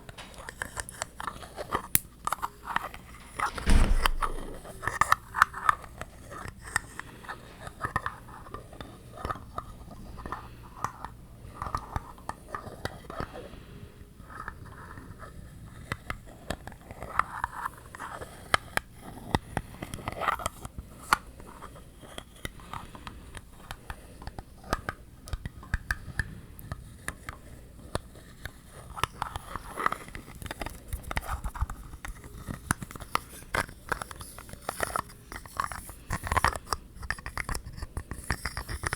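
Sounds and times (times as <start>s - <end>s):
quick tapping on objects: 3.2s - 4.7s.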